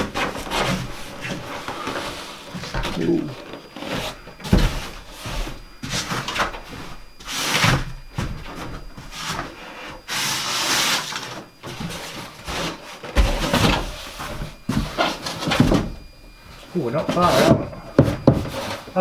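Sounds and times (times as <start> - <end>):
wood scraping and rubbing: 16.9 - 19.0.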